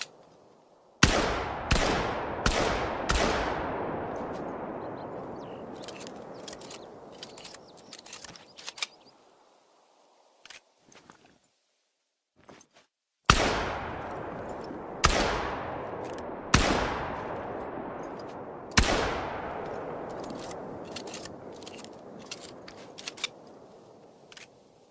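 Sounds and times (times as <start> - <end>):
shotgun shots with echo: 1.0 - 6.3, 13.3 - 20.2.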